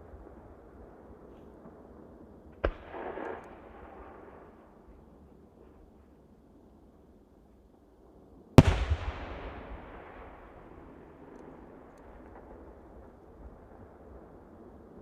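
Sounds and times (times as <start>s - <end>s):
firework bang: 8.6s - 10.7s
rumbling echo: 8.6s - 13.2s.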